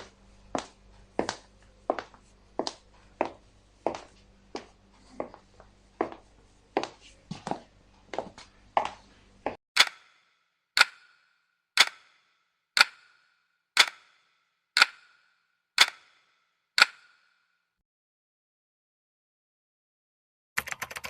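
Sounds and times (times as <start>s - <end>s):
clock-like ticks with ringing tail: 9.8s - 17.4s.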